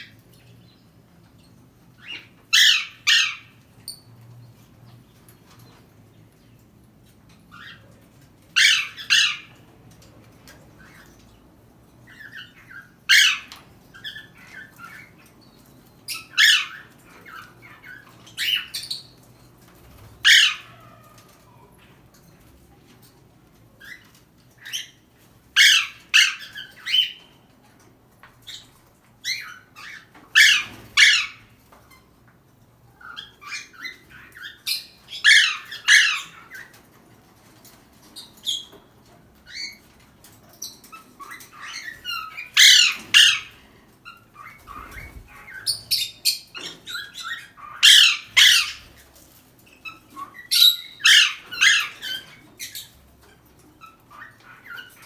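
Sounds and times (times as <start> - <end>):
parrot squawking: 2.0 - 3.5, 8.6 - 9.6, 12.2 - 14.6, 16.1 - 19.0, 20.2 - 21.2, 25.6 - 27.2, 29.4 - 31.5, 33.0 - 36.7, 41.2 - 49.0, 49.8 - 52.9.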